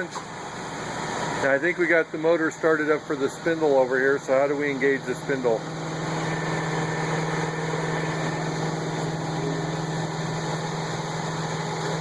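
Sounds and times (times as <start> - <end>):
grinder motor humming: 3.1 - 12.0.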